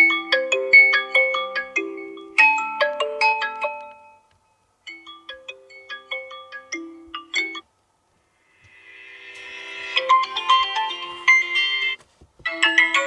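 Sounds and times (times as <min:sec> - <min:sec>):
phone ringtone melody: 0:04.9 - 0:07.6, 0:08.7 - 0:12.0.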